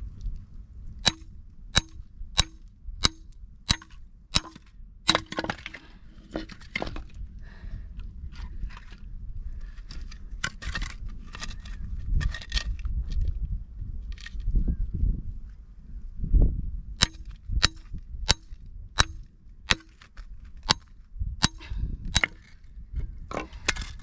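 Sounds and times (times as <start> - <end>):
axe chopping log: 1.8 - 7.0, 17.0 - 20.1, 22.2 - 22.5
wood cracking and splintering: 3.7 - 7.2.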